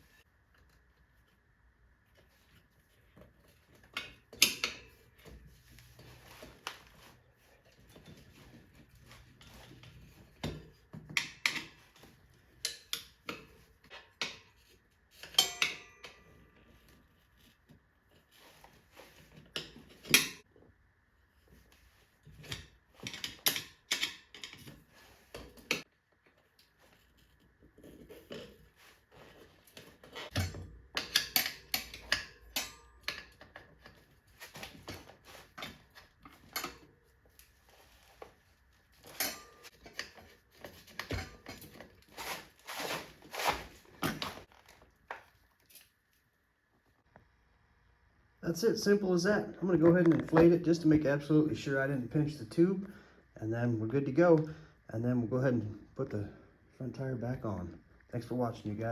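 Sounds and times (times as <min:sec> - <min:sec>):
tire levers clinking on rim: 0:15.2 - 0:16.8, 0:29.7 - 0:38.2, 0:39.0 - 0:44.8.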